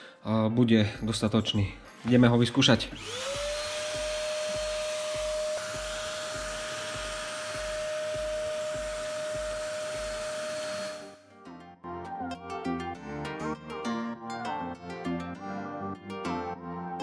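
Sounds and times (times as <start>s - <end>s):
vacuum cleaner motor whine: 3.0s - 11.2s.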